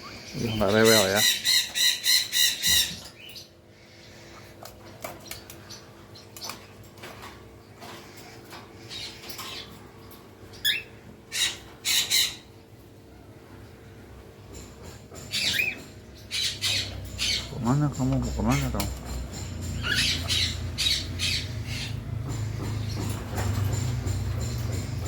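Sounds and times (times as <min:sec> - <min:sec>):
parakeet squawks and chirps: 0:00.0 - 0:03.5, 0:10.5 - 0:12.5.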